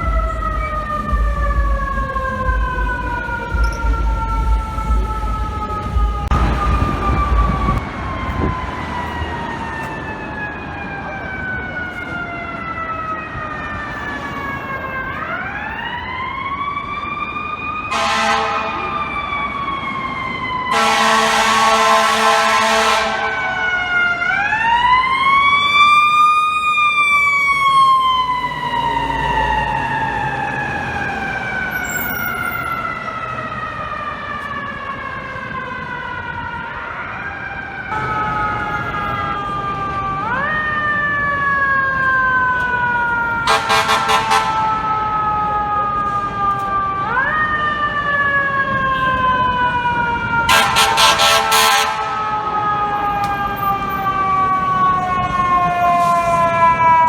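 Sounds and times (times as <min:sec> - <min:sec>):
air horn blasts: 0:17.9 - 0:19.0, 0:20.7 - 0:23.4, 0:43.4 - 0:44.8, 0:50.5 - 0:52.2.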